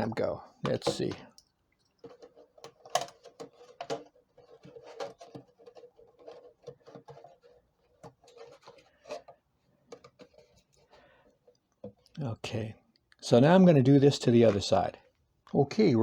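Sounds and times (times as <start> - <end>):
craft tools clicking and tapping: 0.6 - 10.5.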